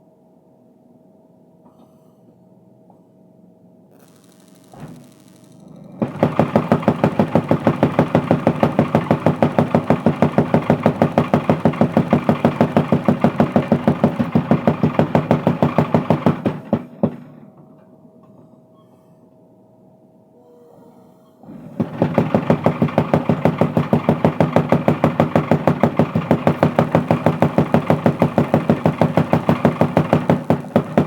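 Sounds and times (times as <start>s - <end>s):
faint steady hum: 0.0s - 6.0s
power hammer pounding: 5.8s - 17.7s, 21.5s - 31.0s.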